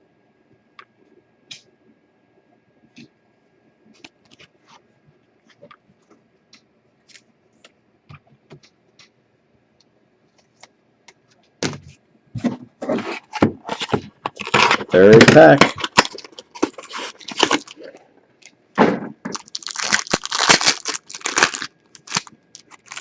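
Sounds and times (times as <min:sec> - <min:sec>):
cards rustling and crackling: 0:12.9 - 0:18.0, 0:19.3 - 0:23.0.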